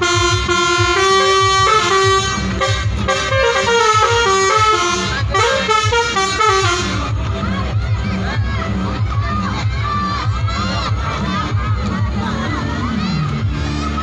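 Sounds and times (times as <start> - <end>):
bus horn playing a melody: 0.0 - 7.2
steady low beat: 0.0 - 7.4.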